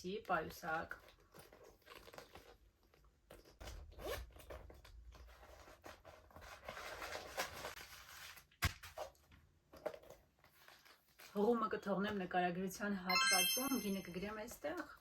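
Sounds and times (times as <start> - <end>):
zipper rasping open and shut: 3.9 - 4.5.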